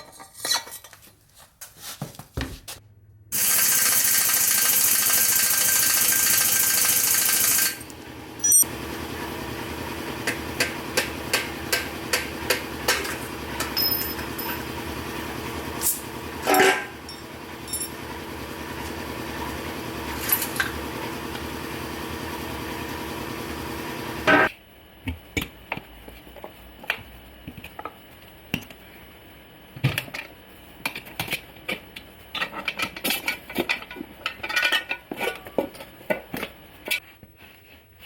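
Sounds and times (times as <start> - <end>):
metallic clinks of tools: 8.4 - 8.6.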